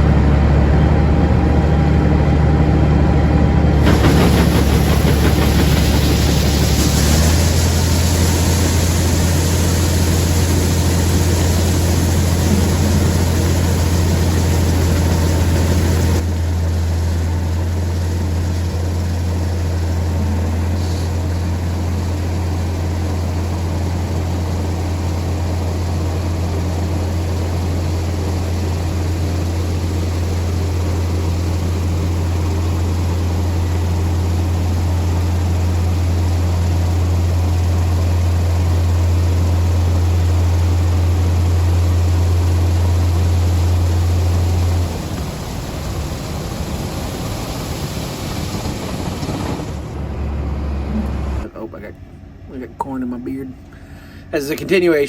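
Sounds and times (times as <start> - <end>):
threshing machinery noise: 0.0 - 51.8
combine harvester engine hum: 0.0 - 55.0.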